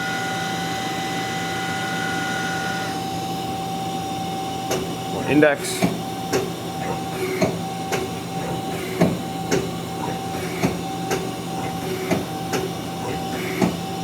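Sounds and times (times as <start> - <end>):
machine hum and whine: 0.0 - 14.0
lathe turret clunking: 4.6 - 14.0.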